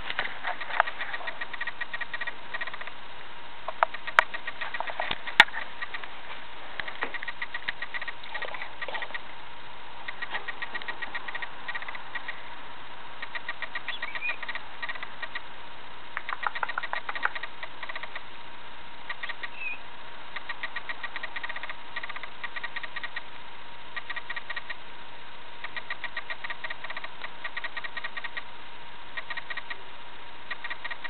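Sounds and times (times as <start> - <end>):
sharp clicks: 0.1 - 3.0, 3.7 - 6.1, 6.8 - 9.2, 10.1 - 12.4, 13.2 - 15.4, 16.2 - 18.2, 19.1 - 19.5, 20.4 - 23.2, 24.0 - 24.8, 25.6 - 28.5, 29.2 - 29.8, 30.5 - 31.0
cockatiel chattering: 0.2 - 3.0, 3.7 - 6.1, 6.8 - 9.3, 10.0 - 12.4, 13.2 - 15.5, 16.2 - 18.2, 19.1 - 19.8, 20.4 - 23.3, 24.0 - 24.8, 25.6 - 28.5, 29.2 - 29.8, 30.5 - 31.0.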